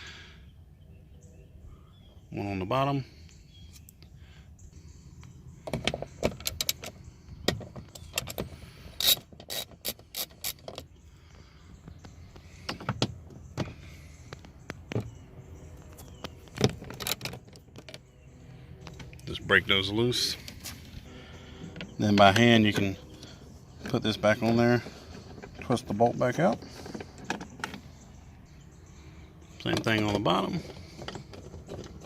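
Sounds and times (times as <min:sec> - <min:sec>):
ratchet clicking on bolts: 0:09.0 - 0:10.8.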